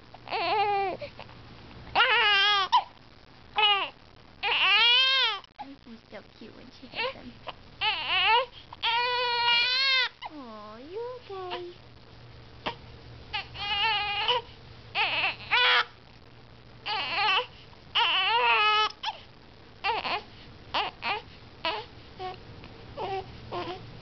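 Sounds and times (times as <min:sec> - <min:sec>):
baby crying: 0:00.3 - 0:01.0, 0:02.0 - 0:02.9, 0:03.6 - 0:05.5, 0:07.8 - 0:10.2, 0:12.6 - 0:15.9, 0:16.8 - 0:19.1, 0:19.8 - 0:22.4, 0:23.0 - 0:23.8
baby hiccups: 0:12.6 - 0:12.8.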